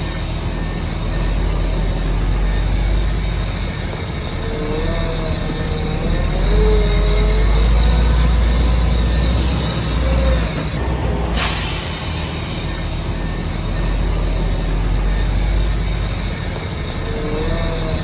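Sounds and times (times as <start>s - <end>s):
diesel engine rumble: 0.0s - 18.0s
hiss: 6.6s - 10.8s, 11.4s - 17.3s.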